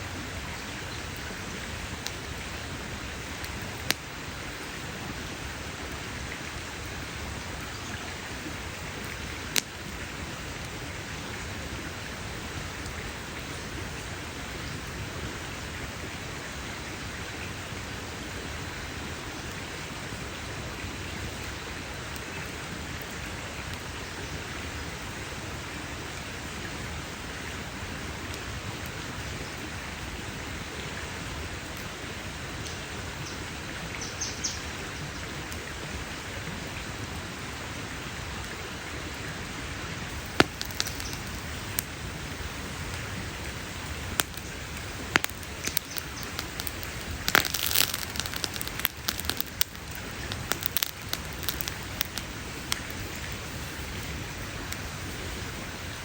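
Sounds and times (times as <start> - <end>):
campfire hissing: 0.0 - 56.0
small fire snaps: 1.1 - 4.7, 8.0 - 10.8, 40.0 - 56.0
loud fire pop: 40.1 - 41.9, 45.0 - 52.2.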